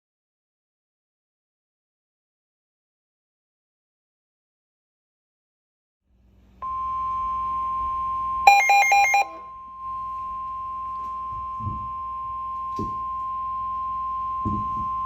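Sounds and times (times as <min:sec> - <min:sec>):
steady high alarm tone: 0:06.6 - 0:15.0
rapid beeps: 0:06.7 - 0:15.0.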